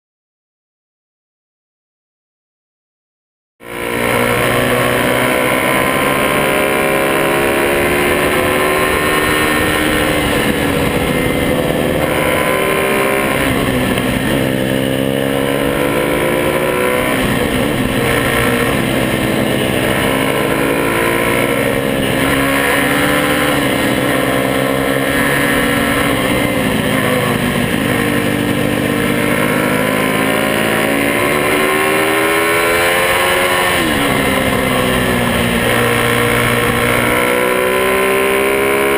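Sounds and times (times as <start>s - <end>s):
minibike engines revving: 3.6s - 38.9s.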